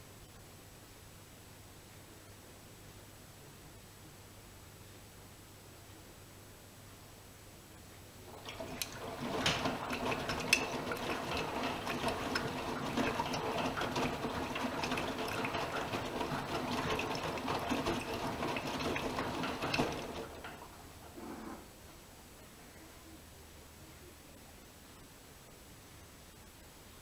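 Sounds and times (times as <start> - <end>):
water rushing into washing machine: 8.3 - 21.6.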